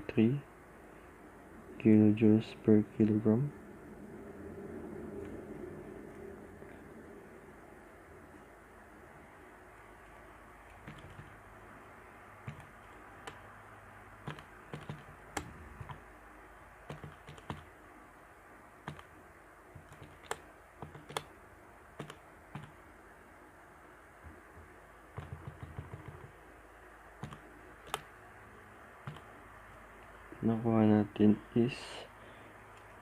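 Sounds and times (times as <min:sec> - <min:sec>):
faint steady hum: 0:00.0 - 0:33.0
keys or buttons clicking: 0:19.8 - 0:21.3.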